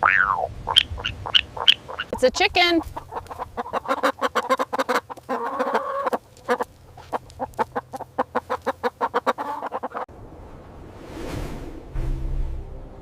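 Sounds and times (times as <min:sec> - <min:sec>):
chicken clucking: 0:00.1 - 0:10.1.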